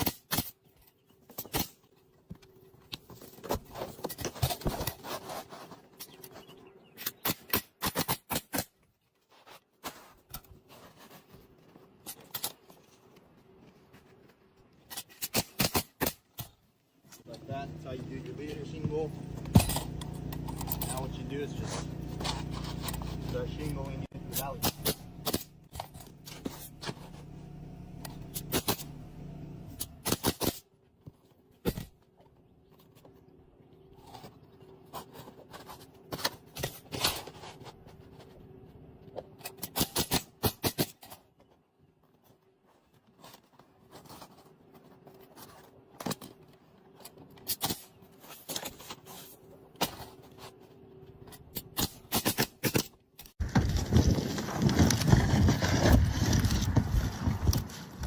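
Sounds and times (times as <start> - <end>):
shingles scraping and rustling: 0.1 - 33.3, 33.9 - 58.0
pneumatic nailer firing: 24.3 - 25.5, 29.7 - 30.6.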